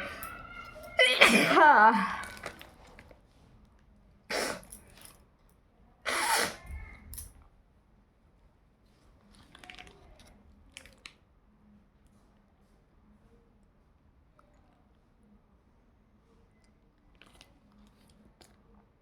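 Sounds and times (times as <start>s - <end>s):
faint clicks and rustles: 2.2s - 5.6s, 8.4s - 19.0s
breathy bursts from nose: 4.3s - 4.8s, 6.1s - 6.8s.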